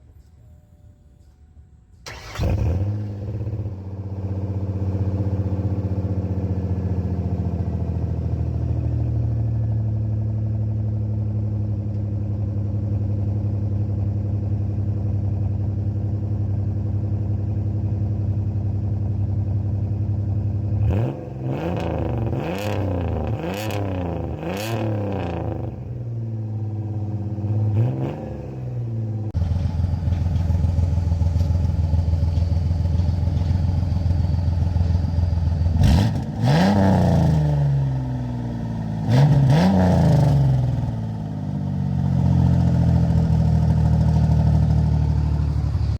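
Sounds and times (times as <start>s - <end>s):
car engine starting and idling: 0.0s - 45.9s
engine throttle blips: 2.0s - 6.2s.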